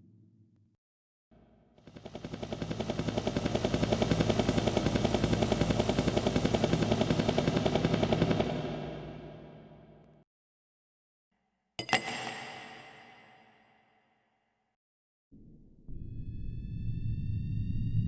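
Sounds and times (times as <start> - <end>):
synthesized helicopter rotor chop: 1.4 - 10.2.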